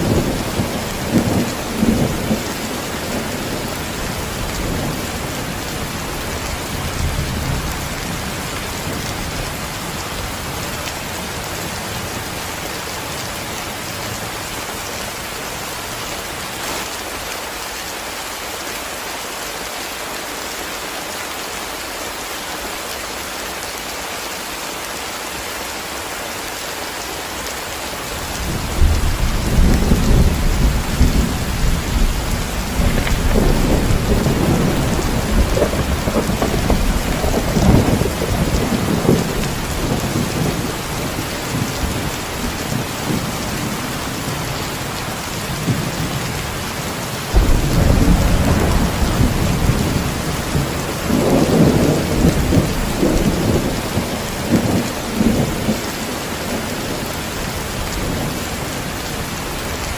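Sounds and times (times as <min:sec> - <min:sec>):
thunder rumbling: 0:00.0 - 0:13.1, 0:28.2 - 0:57.2
heavy rain hissing: 0:00.0 - 0:59.9.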